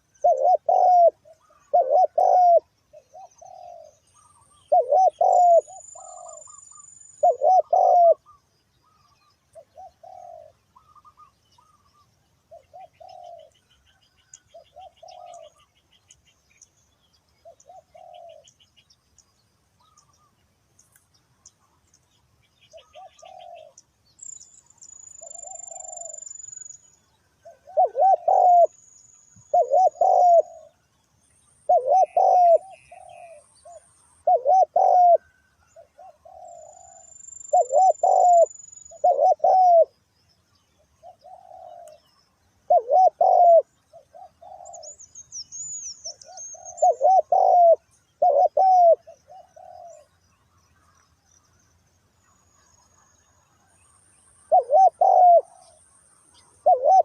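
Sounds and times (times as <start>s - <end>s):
doves cooing: 0.0s - 11.8s, 12.5s - 13.6s, 14.2s - 15.7s, 17.4s - 18.6s, 22.7s - 23.8s, 25.2s - 26.2s, 27.4s - 28.8s, 29.5s - 30.8s, 31.7s - 40.0s, 41.0s - 42.0s, 42.7s - 45.0s, 46.1s - 50.2s, 54.4s - 57.0s.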